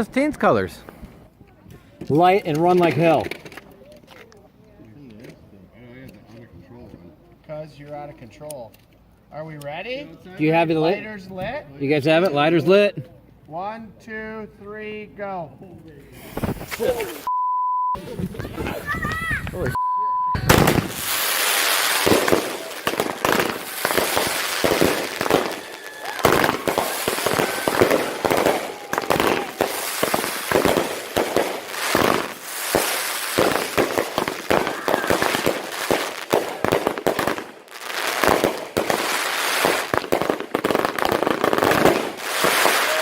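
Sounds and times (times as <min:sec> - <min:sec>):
fireworks crackling and popping: 0:01.9 - 0:04.3, 0:16.1 - 0:17.3, 0:18.0 - 0:19.8, 0:20.4 - 0:43.0.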